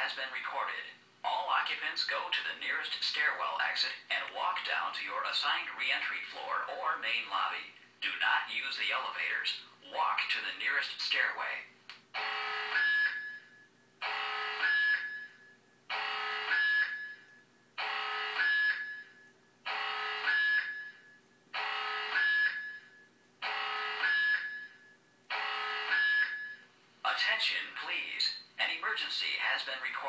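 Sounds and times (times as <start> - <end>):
buzzy fire alarm tone: 12.2 - 26.8.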